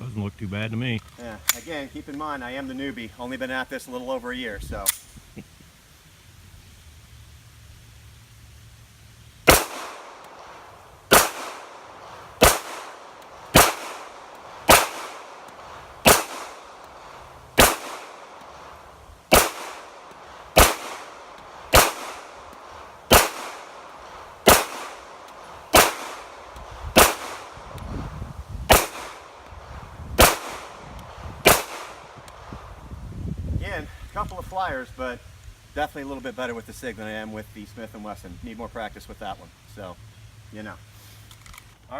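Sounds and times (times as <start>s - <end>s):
pistol shots: 9.5s - 27.7s, 28.7s - 29.5s, 30.2s - 32.4s.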